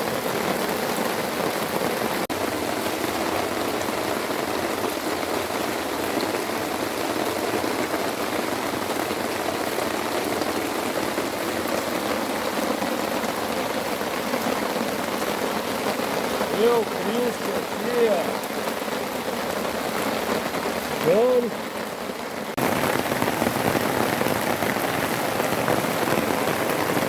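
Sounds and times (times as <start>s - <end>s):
heavy rain falling: 0.0s - 27.0s.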